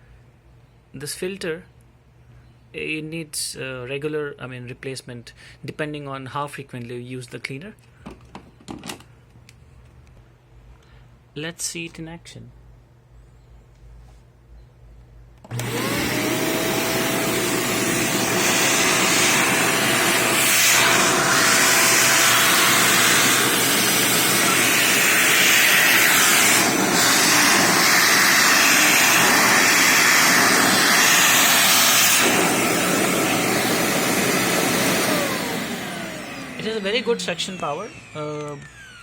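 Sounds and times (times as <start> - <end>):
vacuum cleaner running: 15.4 - 39.0.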